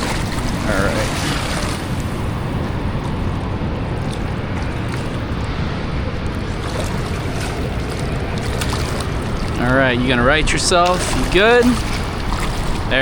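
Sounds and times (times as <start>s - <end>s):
water rushing through spillway: 0.0s - 13.0s
wind buffeting microphone: 0.0s - 13.0s.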